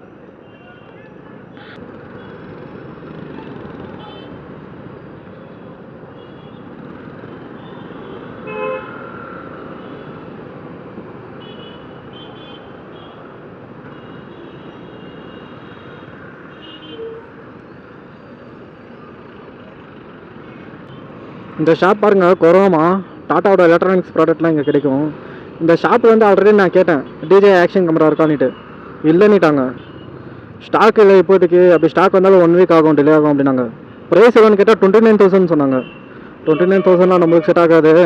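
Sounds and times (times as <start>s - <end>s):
road traffic noise: 0.0s - 38.0s
vehicle horn honking: 7.6s - 9.0s.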